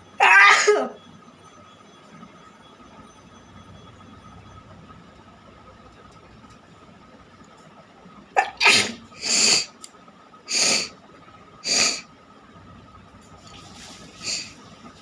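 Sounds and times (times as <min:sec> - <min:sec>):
person sneezing: 0:08.4 - 0:09.6.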